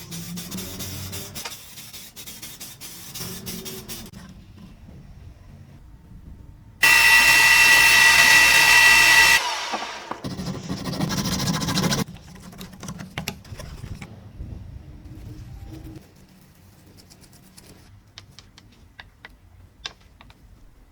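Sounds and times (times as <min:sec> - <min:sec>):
power tool high whine: 0:06.8 - 0:10.3
rough grinding noise: 0:06.8 - 0:10.3.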